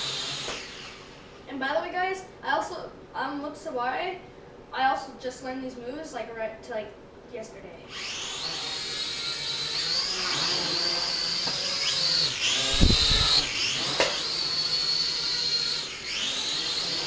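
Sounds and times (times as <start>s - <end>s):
drone motors whining: 0.0s - 1.4s, 7.8s - 17.0s.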